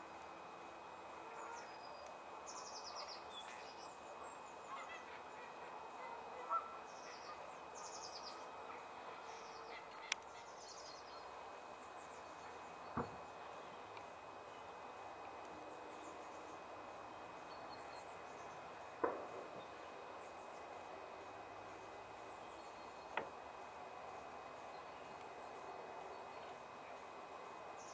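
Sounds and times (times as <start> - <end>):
outdoor hiss: 0.0 - 27.9
lower bird call: 1.2 - 13.9
small birds singing trills: 1.3 - 14.9, 15.6 - 21.0, 21.7 - 26.7.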